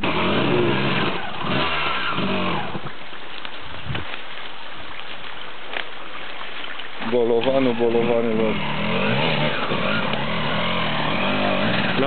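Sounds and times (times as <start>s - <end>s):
dirt bike engine revving: 0.0s - 2.9s, 7.6s - 12.0s.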